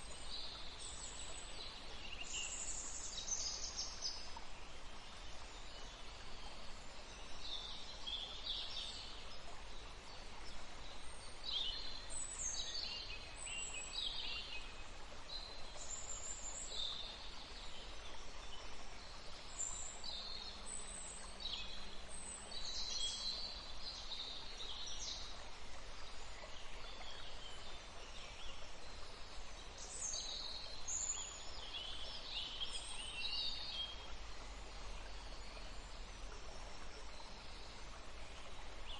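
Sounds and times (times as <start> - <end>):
flowing water hiss: 0.0 - 38.9.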